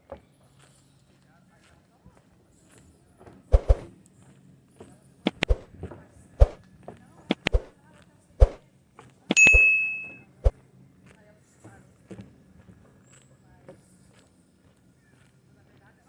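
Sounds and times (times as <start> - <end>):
bright metallic ring: 9.3 - 10.2.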